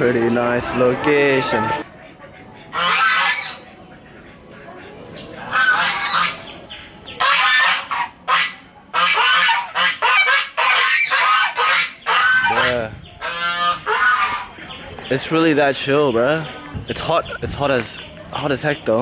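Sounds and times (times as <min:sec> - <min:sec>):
geese honking: 0:00.0 - 0:16.1.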